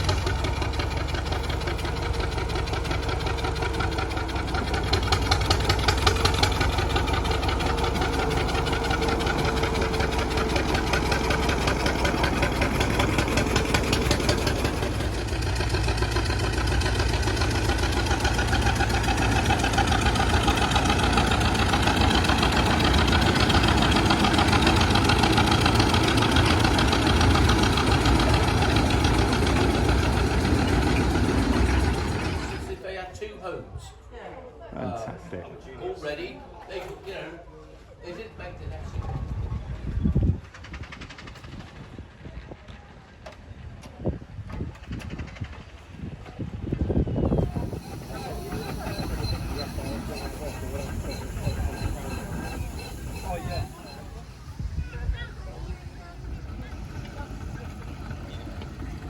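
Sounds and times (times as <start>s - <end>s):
engine running with fast beat: 0.0s - 32.7s, 47.3s - 59.0s.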